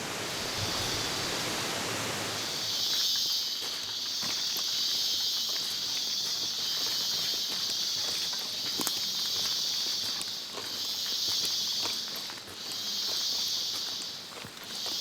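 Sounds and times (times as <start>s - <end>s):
high-pitched insect chorus: 0.0s - 15.0s
footsteps on rocky trail: 2.4s - 15.0s.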